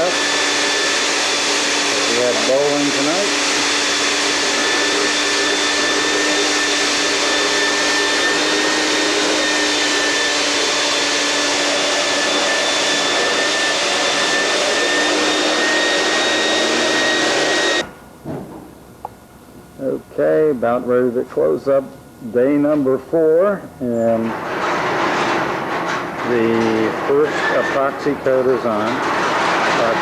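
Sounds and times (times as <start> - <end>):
vacuum cleaner running: 0.0 - 18.0, 21.4 - 30.0.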